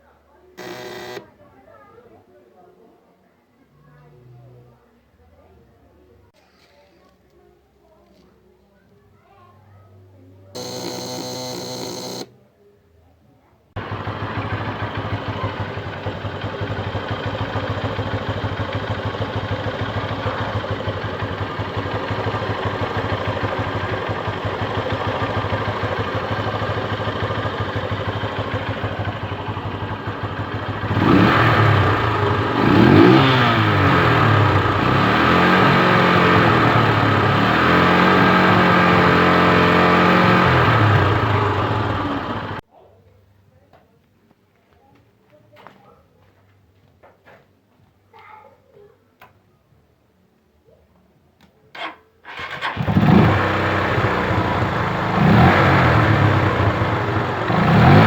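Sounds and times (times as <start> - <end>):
electric buzz: 0.6 - 1.2
motorcycle engine revving: 0.6 - 1.3, 10.6 - 12.3, 13.8 - 42.6, 51.8 - 58.0.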